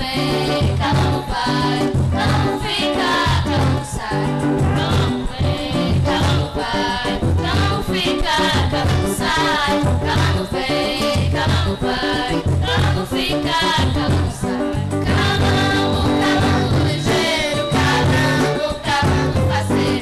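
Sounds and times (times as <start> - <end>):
lively song with bass line: 0.0 - 20.0.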